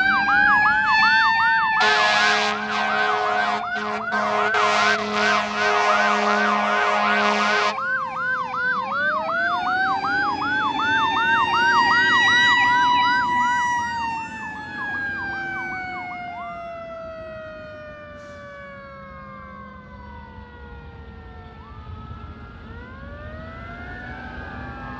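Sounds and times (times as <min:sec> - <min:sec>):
fast yelp siren: 0:00.0 - 0:24.9
wailing siren: 0:00.0 - 0:24.9
vehicle horn blast: 0:01.8 - 0:07.8.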